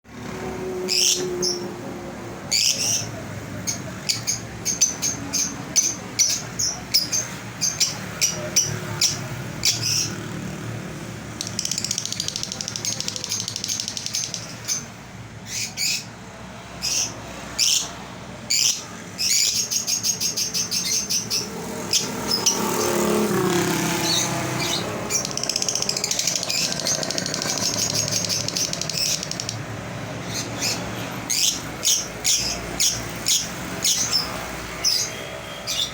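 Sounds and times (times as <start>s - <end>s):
lovebirds chirping: 2.5s - 10.6s, 11.3s - 35.9s
rapid chattering bird trills: 2.5s - 10.7s, 11.3s - 16.2s, 16.8s - 35.9s.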